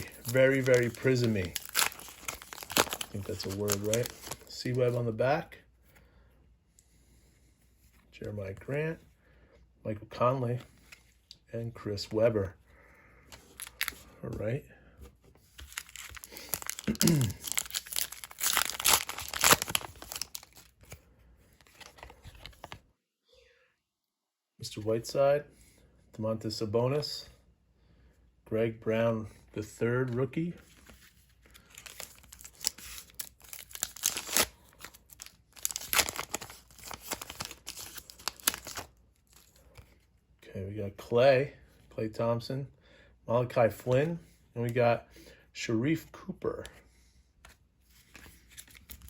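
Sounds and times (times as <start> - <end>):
wrapper tearing and crinkling: 0.0 - 4.5, 15.6 - 20.7, 31.6 - 39.6.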